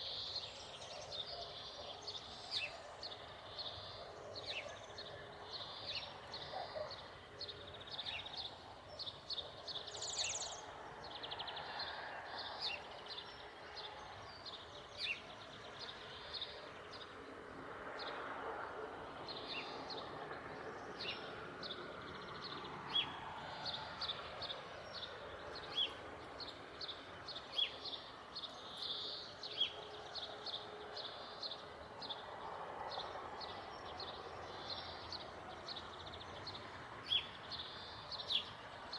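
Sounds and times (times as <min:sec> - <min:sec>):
small birds chirping: 0:00.0 - 0:17.2.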